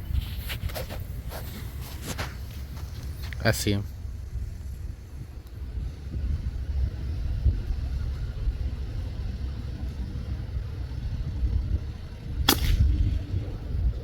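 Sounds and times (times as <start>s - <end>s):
steady low rumble: 0.0s - 14.0s
air rifle shot: 12.4s - 13.6s.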